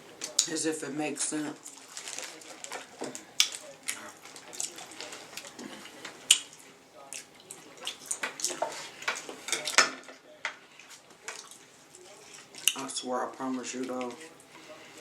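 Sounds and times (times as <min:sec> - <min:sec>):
crab shells cracking: 0:01.6 - 0:10.0
wet handling noises: 0:01.6 - 0:12.9.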